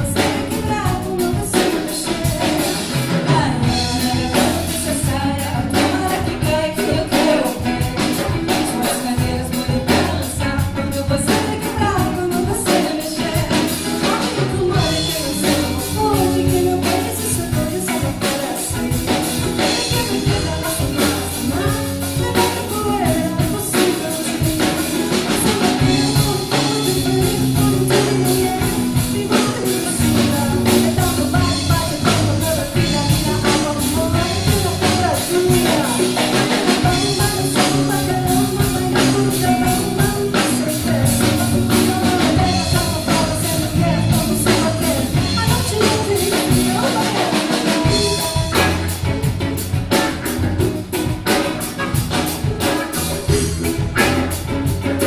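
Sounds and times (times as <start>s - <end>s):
bass line: 0.0s - 55.0s
busy steady percussion: 0.0s - 55.0s
person singing: 0.0s - 55.0s
samba band playing: 12.1s - 55.0s.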